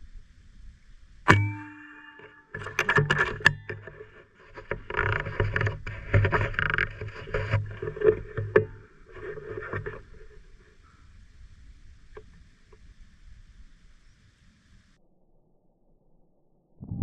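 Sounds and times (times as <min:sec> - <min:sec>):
sharp knocks: 0:01.3 - 0:03.6.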